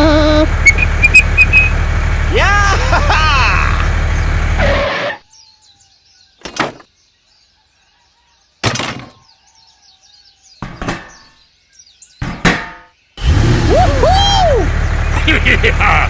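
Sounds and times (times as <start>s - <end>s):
faint birdsong: 0.0s - 13.3s, 13.9s - 16.0s
sharp ringing knocks: 10.6s - 11.4s, 12.2s - 13.0s.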